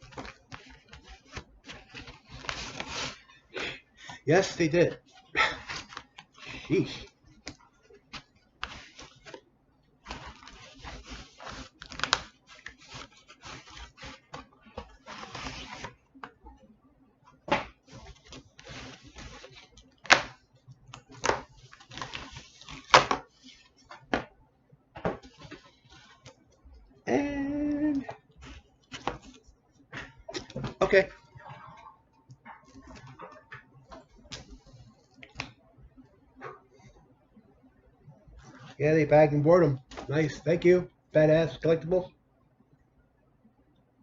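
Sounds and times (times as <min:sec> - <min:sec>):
packaging rustling: 0:00.0 - 0:03.5, 0:04.1 - 0:09.4, 0:10.0 - 0:16.4, 0:17.5 - 0:24.3, 0:25.0 - 0:26.5, 0:27.6 - 0:35.5.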